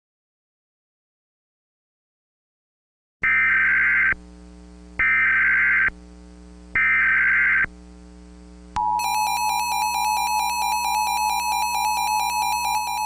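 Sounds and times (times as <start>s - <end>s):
two-tone alert tone: 8.8s - 13.0s.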